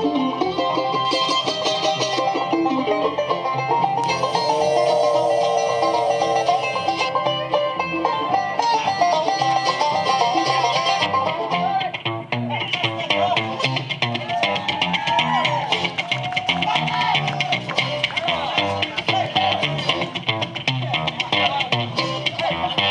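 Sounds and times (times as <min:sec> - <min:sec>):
bluegrass band playing: 0:00.0 - 0:22.9
fast banjo picking: 0:00.0 - 0:22.9
sliding melody line: 0:03.8 - 0:07.6.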